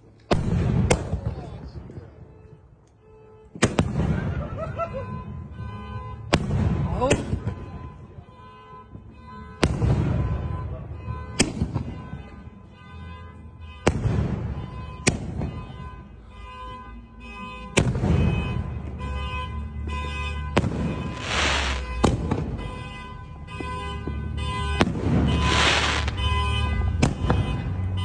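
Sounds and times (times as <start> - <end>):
firework shells bursting: 20.6 - 22.6, 24.8 - 26.2
firework crackling hiss: 21.2 - 21.9, 25.5 - 26.2.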